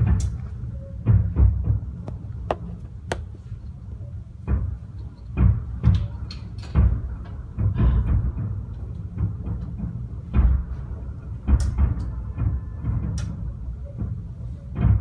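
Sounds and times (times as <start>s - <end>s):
continuous fireworks rumble: 6.8s - 14.2s.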